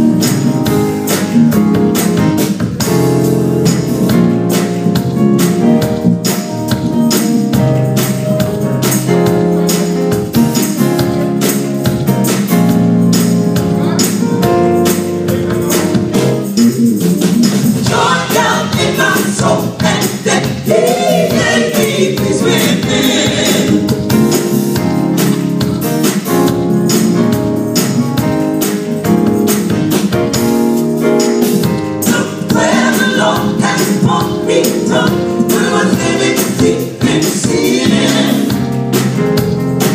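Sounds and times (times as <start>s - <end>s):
live band playing a beat: 0.0s - 39.9s
gospel choir singing: 17.8s - 24.8s, 32.0s - 38.9s.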